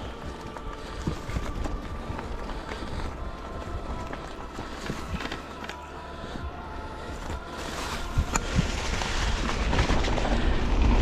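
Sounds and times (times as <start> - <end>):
bike tyres rolling over ground: 0.0 - 5.9, 7.1 - 11.0.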